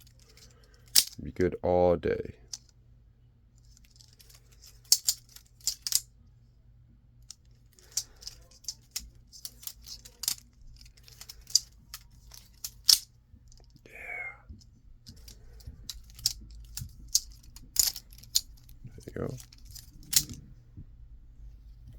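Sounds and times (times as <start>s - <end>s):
balisong handles clicking: 0.1s - 1.2s, 3.8s - 6.0s, 7.2s - 13.8s, 14.6s - 20.4s.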